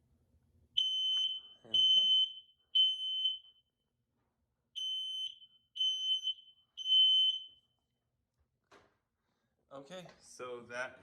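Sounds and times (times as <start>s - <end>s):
smoke alarm beeps: 0.8s - 3.8s, 4.8s - 7.8s.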